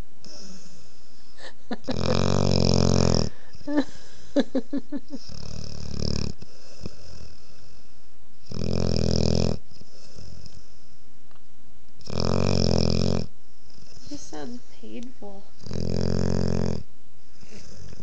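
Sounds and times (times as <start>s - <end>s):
puppy snoring: 0.0s - 11.0s, 12.0s - 18.0s
soft breath: 17.2s - 18.0s.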